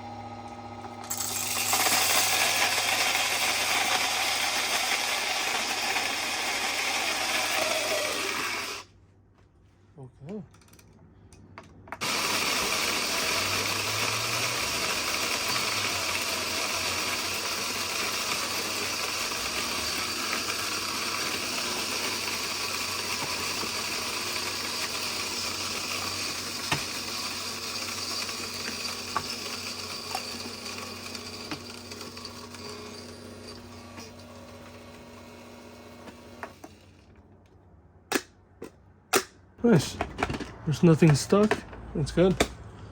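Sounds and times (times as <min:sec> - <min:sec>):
coffee grinder grinding: 0:00.0 - 0:08.9, 0:12.0 - 0:37.1.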